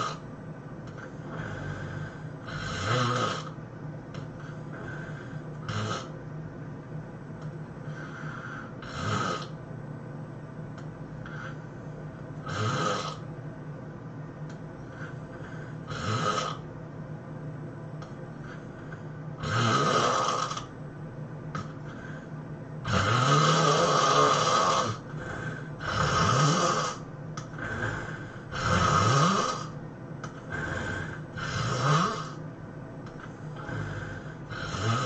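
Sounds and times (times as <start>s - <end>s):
loud snoring: 0.0s - 0.2s, 1.2s - 3.6s, 4.4s - 6.2s, 7.9s - 9.6s, 11.3s - 11.6s, 12.4s - 13.2s, 14.9s - 16.6s, 19.4s - 20.7s, 22.8s - 32.4s, 33.2s - 35.0s.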